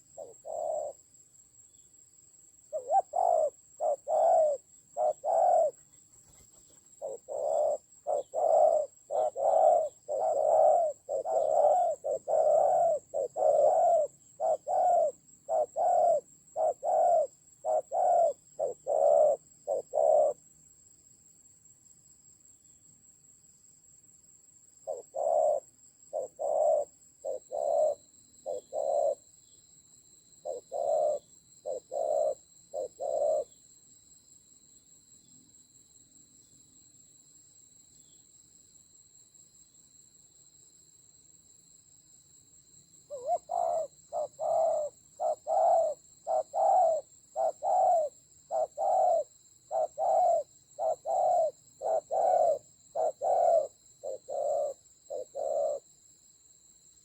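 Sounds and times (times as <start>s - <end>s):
dove cooing: 0.0s - 1.0s, 2.7s - 20.4s, 24.8s - 29.2s, 30.4s - 33.6s, 43.1s - 55.9s.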